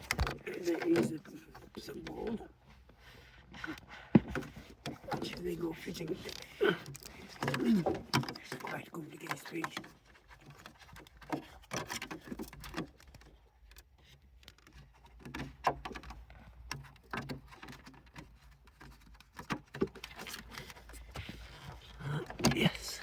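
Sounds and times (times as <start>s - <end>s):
plastic trim parts clicking and knocking: 0.0s - 2.4s.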